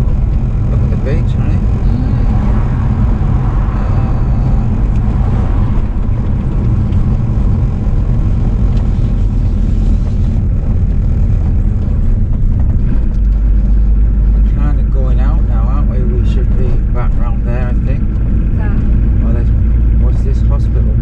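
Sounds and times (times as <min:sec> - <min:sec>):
car cabin road and engine rumble: 0:00.0 - 0:21.0.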